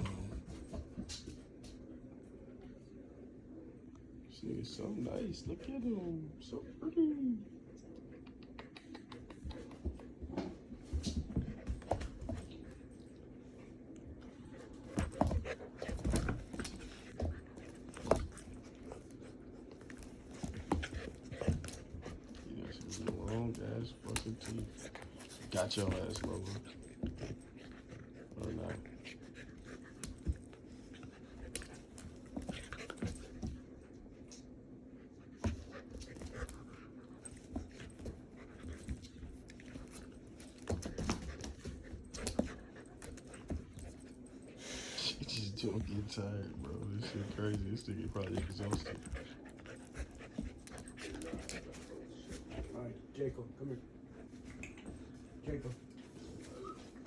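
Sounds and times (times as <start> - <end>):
puppies play-fighting thumps: 9.1 - 12.9, 14.7 - 34.2, 35.1 - 44.6, 45.6 - 52.9.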